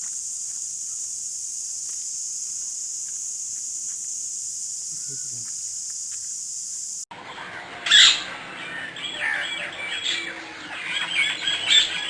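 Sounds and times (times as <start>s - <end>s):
birds chirping: 4.9s - 6.3s, 7.1s - 12.0s
bird squawking: 7.1s - 12.0s.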